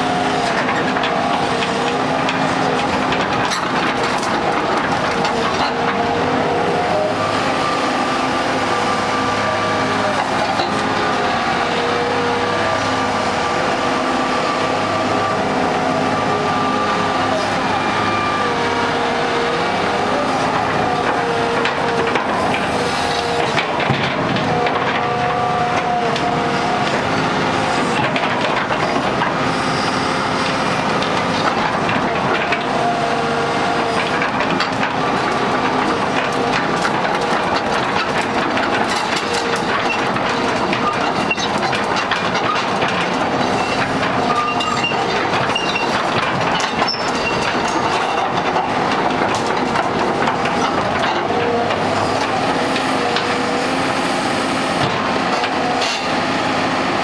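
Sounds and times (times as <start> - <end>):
excavator engine and hydraulic whine: 0.0 - 57.0.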